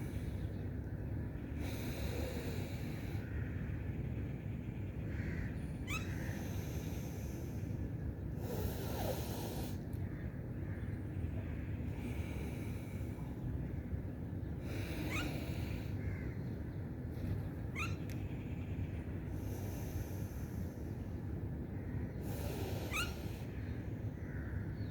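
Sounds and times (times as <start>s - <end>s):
steady low hum: 0.0s - 24.9s.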